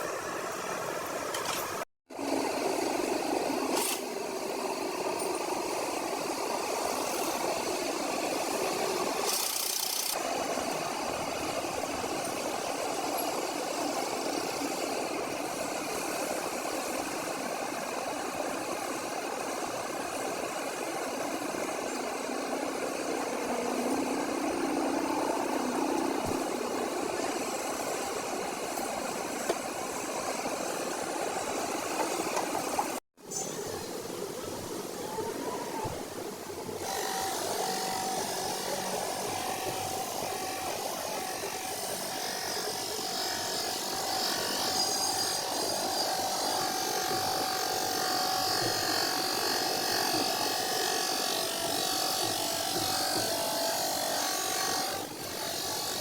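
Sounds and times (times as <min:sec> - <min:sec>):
motor running steadily: 0:35.8 - 0:56.0.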